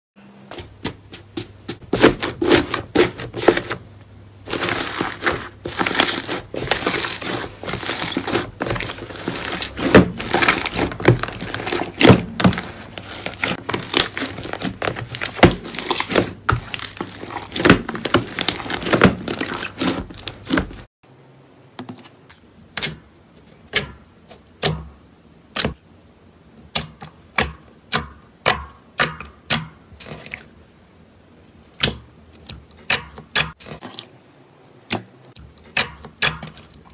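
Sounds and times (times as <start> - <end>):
slime popping and crackling: 4.5 - 20.9.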